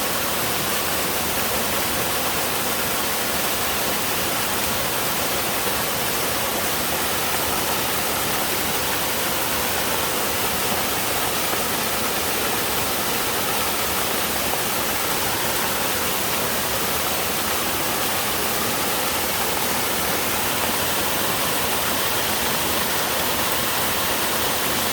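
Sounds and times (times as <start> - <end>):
waterfall pouring over rocks: 0.0 - 24.9.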